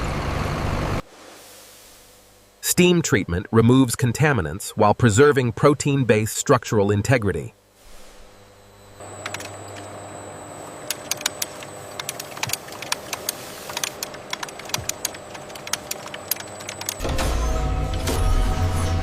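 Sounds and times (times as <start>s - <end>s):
mechanical hum: 0.0s - 19.0s
thin high whine: 7.6s - 12.5s
sharp irregular clicks: 9.2s - 9.6s, 10.8s - 17.0s.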